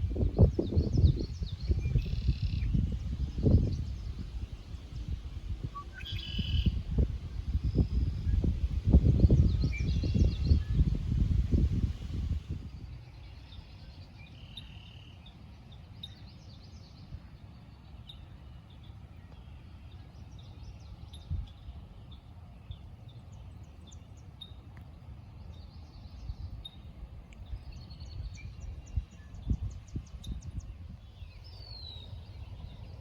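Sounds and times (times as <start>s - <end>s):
steady low rumble: 0.0s - 14.0s, 20.6s - 33.0s
birds chirping: 0.1s - 33.0s.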